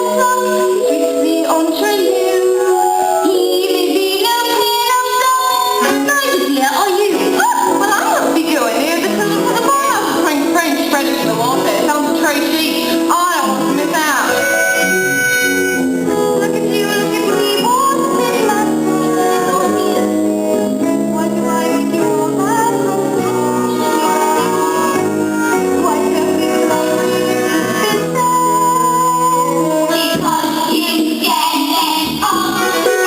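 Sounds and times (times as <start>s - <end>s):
instrumental accompaniment: 0.0s - 33.0s
person singing: 0.0s - 33.0s.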